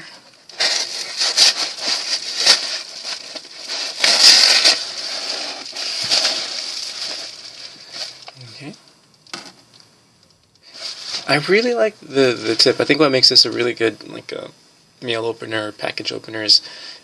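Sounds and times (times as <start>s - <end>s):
packaging crackling and scraping: 0.4s - 8.6s.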